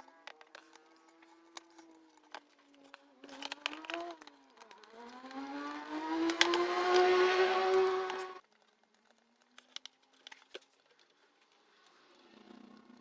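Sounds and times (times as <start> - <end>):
handling clicks: 0.0 - 11.2
hair dryer running: 4.9 - 8.4.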